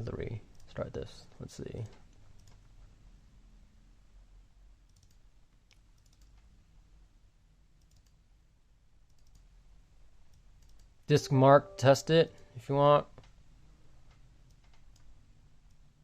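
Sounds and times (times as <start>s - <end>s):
low room hum: 0.0s - 16.0s
faint computer clicks: 1.7s - 2.7s, 4.9s - 6.5s, 7.8s - 8.2s.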